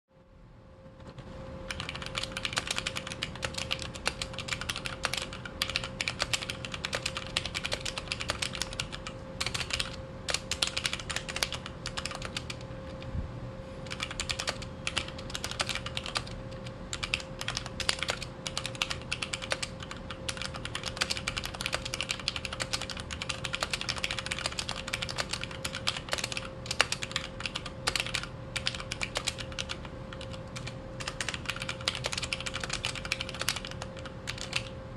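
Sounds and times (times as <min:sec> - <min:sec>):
fast typing on mechanical keyboard: 0:01.7 - 0:13.0, 0:13.8 - 0:34.8.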